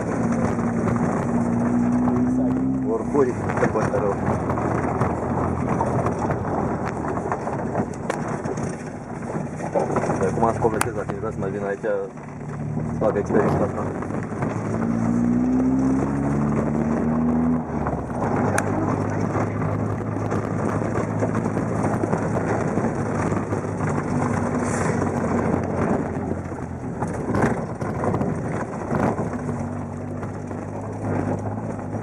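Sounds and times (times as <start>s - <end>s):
engine revving under load: 0.0s - 6.8s, 12.6s - 27.6s
vehicle rattling and knocking: 0.0s - 32.0s.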